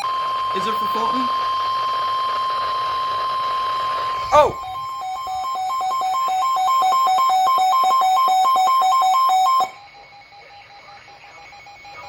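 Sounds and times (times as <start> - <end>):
radio hiss: 0.0 - 1.9
alternating high-low alarm beeping: 0.0 - 12.0.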